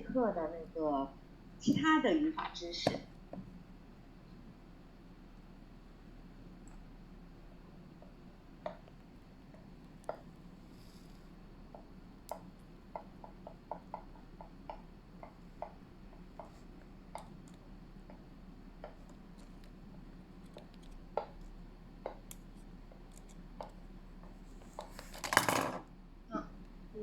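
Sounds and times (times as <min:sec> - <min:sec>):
low electrical hum: 0:00.0 - 0:27.0
light clicks and taps: 0:06.6 - 0:06.9, 0:08.0 - 0:25.2.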